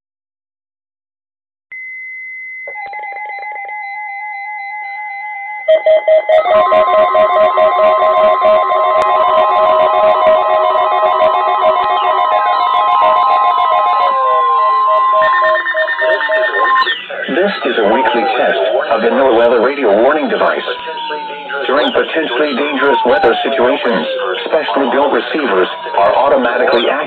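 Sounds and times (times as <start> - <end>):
loud steady alarm tone: 2.7 - 27.0
electronic music with stepped notes: 5.6 - 27.0.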